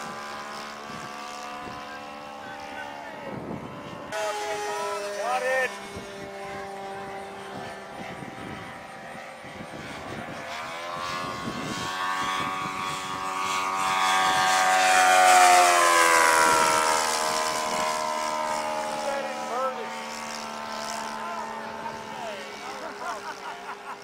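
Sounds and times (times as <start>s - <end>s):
model airplane propeller engine: 0.0s - 24.0s.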